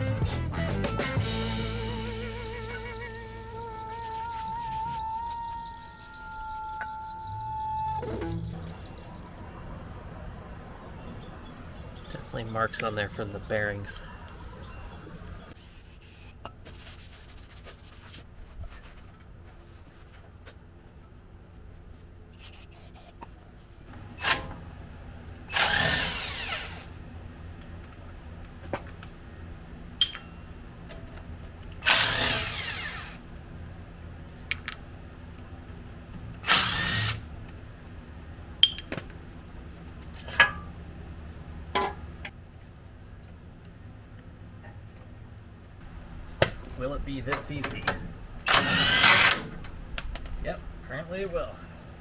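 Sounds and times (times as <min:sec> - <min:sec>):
power tool bursts: 0:25.5 - 0:26.9, 0:31.8 - 0:33.2, 0:36.4 - 0:37.2, 0:48.4 - 0:49.6.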